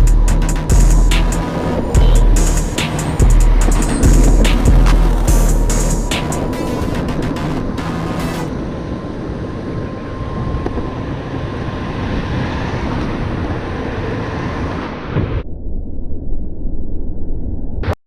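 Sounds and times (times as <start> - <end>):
wind on microphone: 0.0 - 7.9, 8.5 - 16.0.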